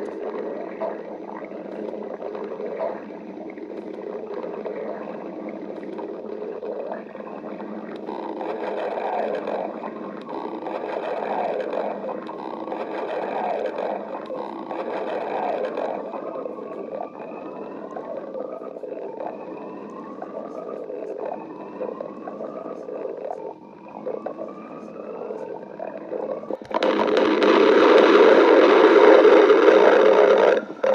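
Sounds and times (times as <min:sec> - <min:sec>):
stomach growling and gurgling: 0:00.0 - 0:30.9.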